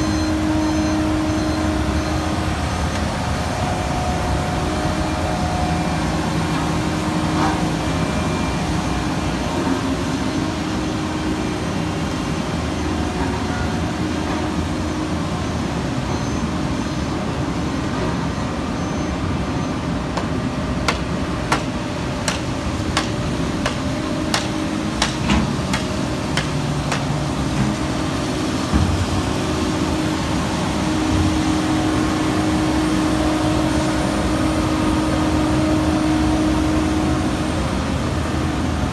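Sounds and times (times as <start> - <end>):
diesel engine drone: 0.0 - 38.9
sharp metallic taps: 20.9 - 27.2.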